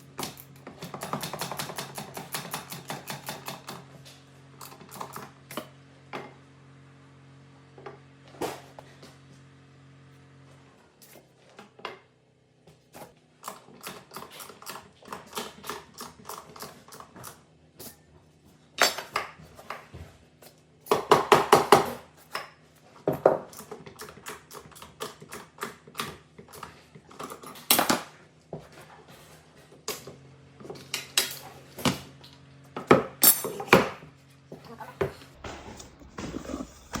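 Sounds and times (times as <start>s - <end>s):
hard objects clinking and knocking: 35.4s - 37.0s.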